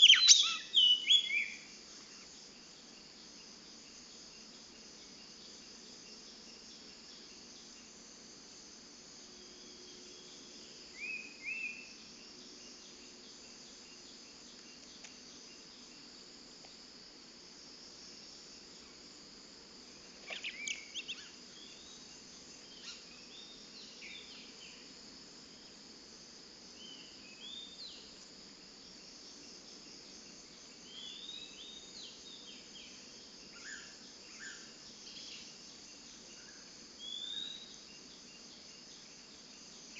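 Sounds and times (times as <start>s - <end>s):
bird chirping: 0.0s - 1.6s, 20.3s - 22.0s
crickets droning: 0.0s - 39.9s.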